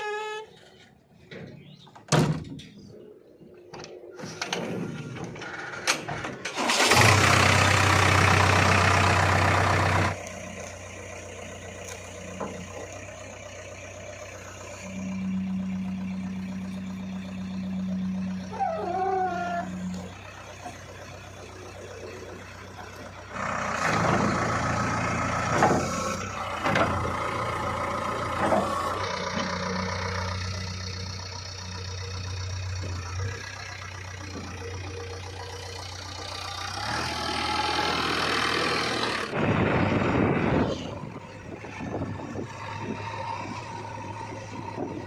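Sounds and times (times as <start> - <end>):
diesel engine revving: 4.1 - 45.0.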